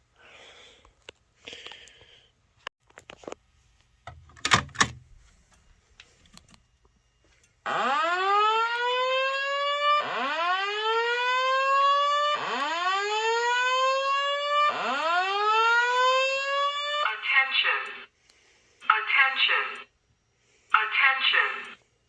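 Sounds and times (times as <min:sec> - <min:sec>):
whoop evacuation alarm tone: 0:07.7 - 0:17.4.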